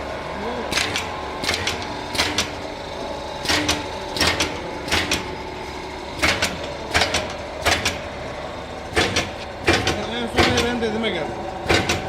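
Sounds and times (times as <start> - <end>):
machine humming: 0.0 - 12.0
sharp mechanical clanks: 0.7 - 2.7, 3.4 - 5.4, 6.2 - 8.2, 8.8 - 11.0, 11.6 - 12.0.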